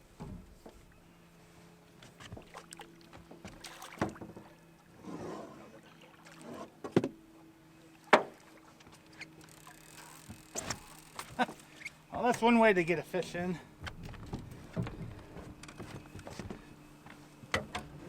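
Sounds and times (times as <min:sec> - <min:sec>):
knocks and clatter on boat deck: 0:02.0 - 0:04.5, 0:06.8 - 0:07.2, 0:13.8 - 0:18.0.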